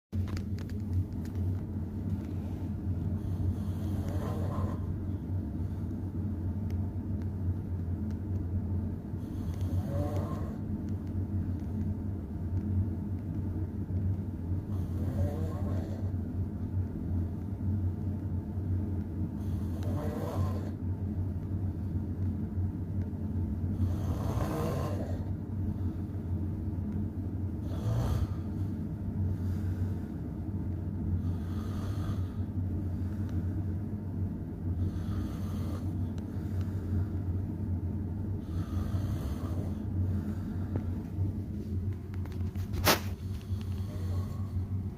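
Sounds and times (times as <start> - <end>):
steady low hum: 0.0 - 44.9
person snoring: 3.2 - 5.0, 9.3 - 10.6, 14.7 - 16.1, 19.5 - 20.8, 23.8 - 25.3, 27.6 - 28.6, 31.2 - 33.0, 34.8 - 36.5, 38.4 - 40.7, 43.7 - 44.7.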